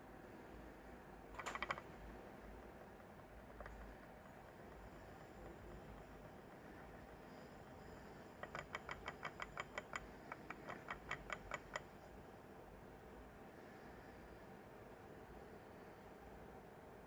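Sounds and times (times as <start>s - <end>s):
rod clicking inside coil: 1.3s - 12.2s.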